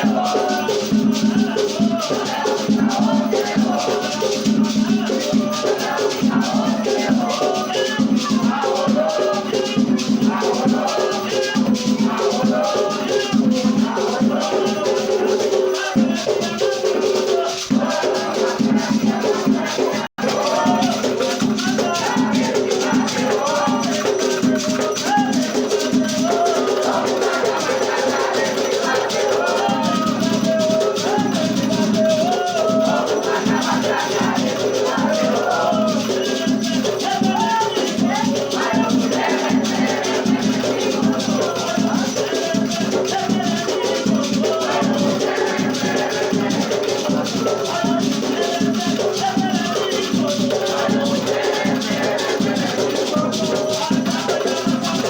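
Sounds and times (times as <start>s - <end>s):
drums beating: 0.0s - 55.0s
voices singing: 0.0s - 55.0s
gourd rattle shaking: 16.6s - 55.0s.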